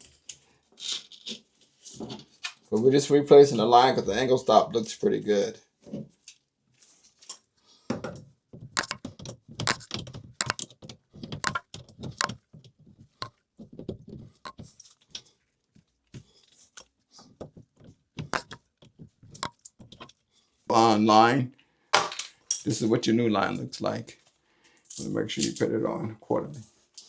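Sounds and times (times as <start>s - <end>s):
metal fittings clinking and rattling: 8.8s - 10.7s.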